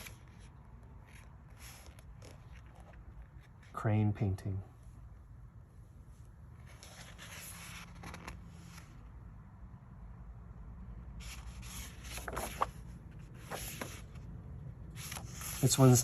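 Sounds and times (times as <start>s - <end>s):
book pages turning: 0.0s - 3.7s, 6.6s - 9.1s, 11.2s - 14.3s, 14.9s - 16.0s.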